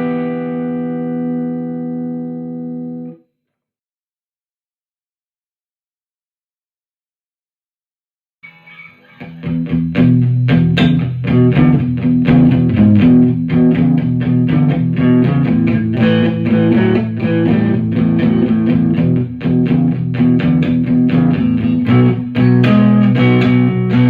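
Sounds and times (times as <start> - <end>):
electric guitar picked notes and chords: 0.0 - 3.2, 8.5 - 24.0.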